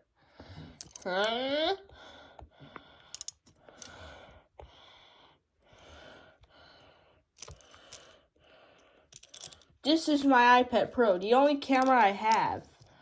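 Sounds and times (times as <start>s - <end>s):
soft breathing: 1.9s - 9.8s.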